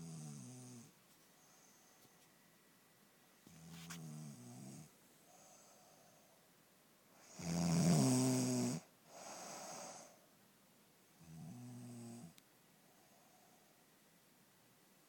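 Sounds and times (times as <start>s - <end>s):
woman snoring: 7.2s - 10.2s, 11.2s - 12.4s.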